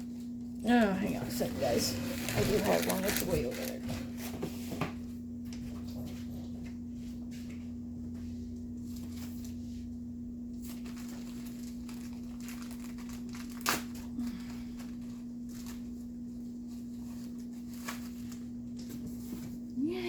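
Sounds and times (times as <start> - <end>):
steady low hum: 0.0 - 20.0.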